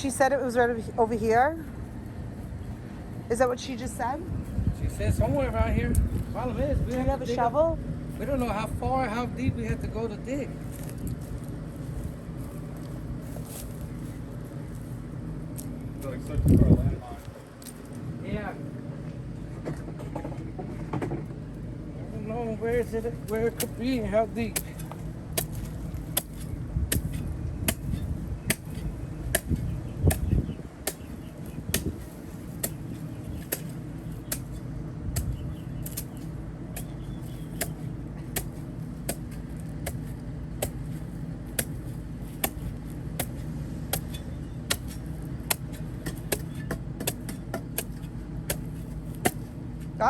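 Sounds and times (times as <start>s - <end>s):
steady low rumble: 0.0s - 20.0s, 20.6s - 50.0s
shovel chopping into soil: 22.7s - 50.0s.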